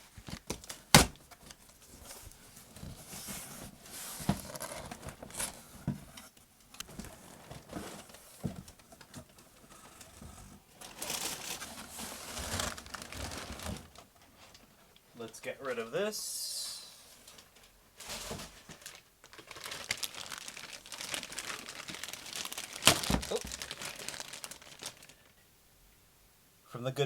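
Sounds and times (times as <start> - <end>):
packaging crinkling: 10.8 - 14.7, 17.2 - 25.4.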